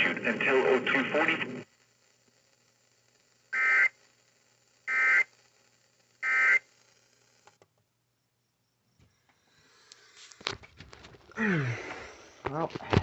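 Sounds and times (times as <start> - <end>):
digital data tone bursts: 6.2 - 6.7.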